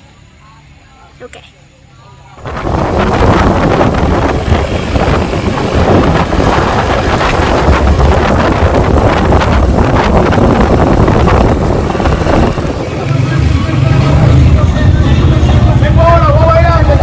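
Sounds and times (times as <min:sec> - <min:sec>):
wind buffeting microphone: 0:02.4 - 0:17.0.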